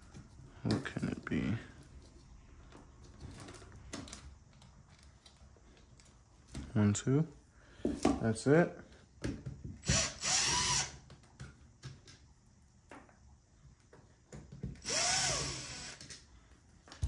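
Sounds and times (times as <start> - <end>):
cordless drill motor whirring: 9.8 - 11.0, 14.8 - 16.2.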